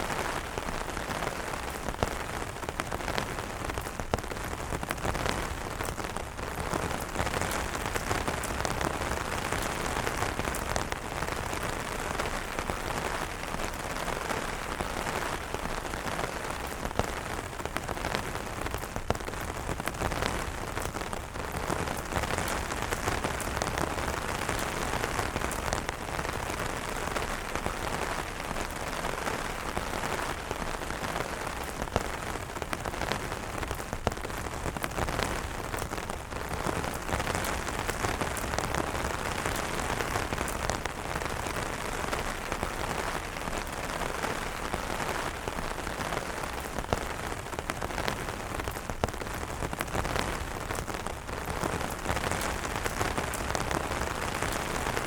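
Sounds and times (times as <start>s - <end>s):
heavy rain on umbrella: 0.0s - 55.0s.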